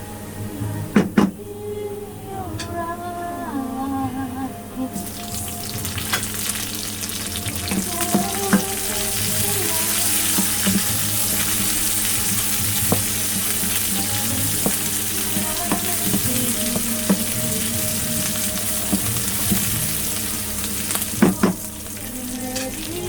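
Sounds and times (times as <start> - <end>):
faint background music: 0.0 - 23.0
food sizzling in frying pan: 5.0 - 23.0
utensil stirring in pan: 5.0 - 23.0.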